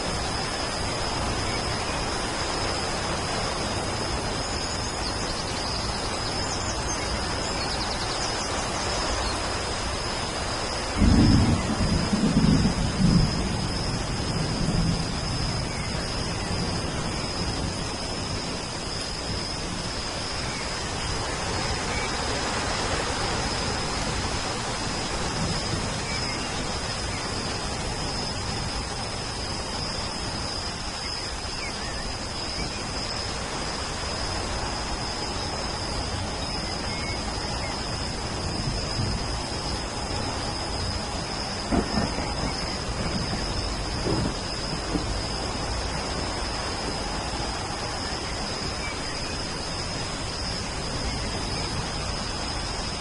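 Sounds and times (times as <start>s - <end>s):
steady rainfall: 0.0s - 53.0s
thin high steady tone: 0.0s - 53.0s
thunder rumble: 10.9s - 30.4s, 36.0s - 48.8s.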